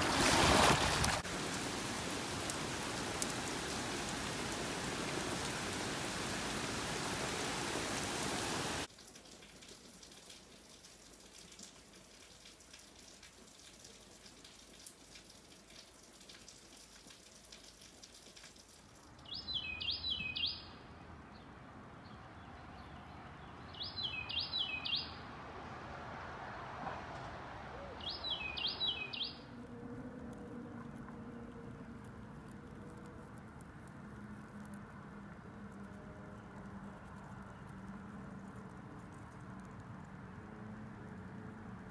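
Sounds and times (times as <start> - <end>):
light rain pattering: 0.0 - 20.5, 28.0 - 41.9
songbird calling: 19.2 - 20.7, 23.7 - 25.2, 27.7 - 29.4.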